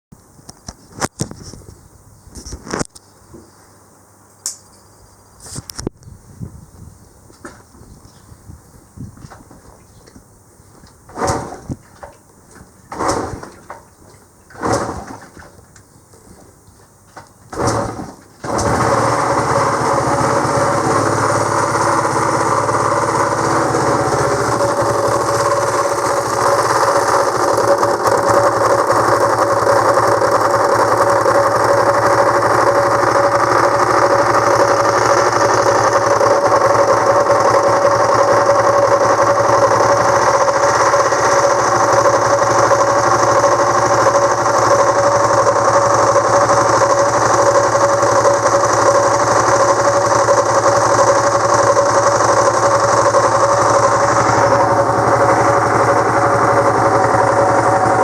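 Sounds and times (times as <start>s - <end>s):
abnormal mechanical noise: 6.8s - 58.0s
motorcycle engine running: 17.6s - 58.0s.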